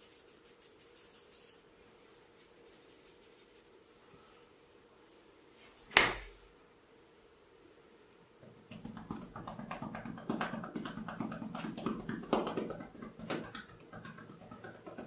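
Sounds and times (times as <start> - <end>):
hands rubbing hair and skin: 0.0 - 3.8, 8.4 - 15.0
sharp taps on skin: 8.7 - 15.0.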